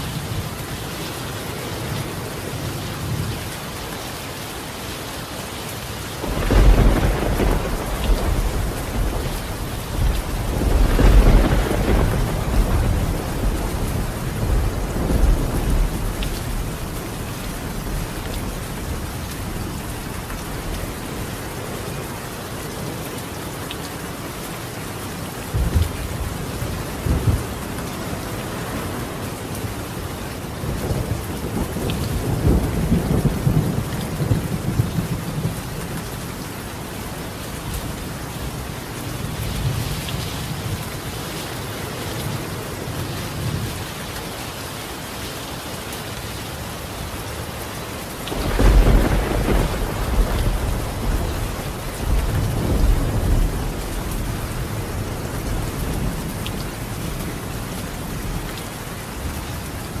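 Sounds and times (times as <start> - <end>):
rain on a tiled roof: 0.0 - 60.0
thunderclap: 6.2 - 16.7, 48.3 - 54.6
thunder rumbling: 6.2 - 21.3, 25.5 - 30.0, 30.6 - 36.0, 48.3 - 58.5.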